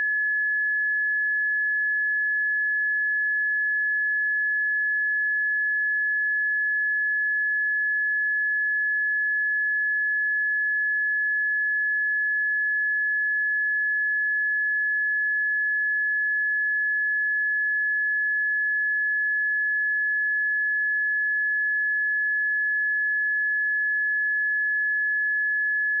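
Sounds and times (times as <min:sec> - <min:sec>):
high-pitched sine test tone: 0:00.0 - 0:26.0.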